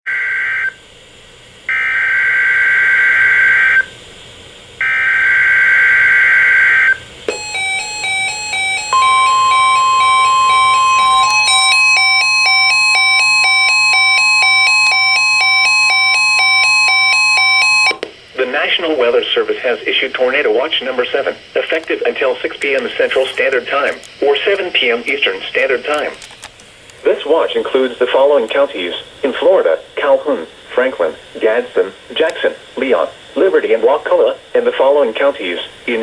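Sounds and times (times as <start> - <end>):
alternating electronic alarm beep: 1.7 - 3.9, 4.8 - 18.0
steady warning tone: 1.7 - 4.0, 4.8 - 18.0
warbling data bursts: 7.3 - 17.0.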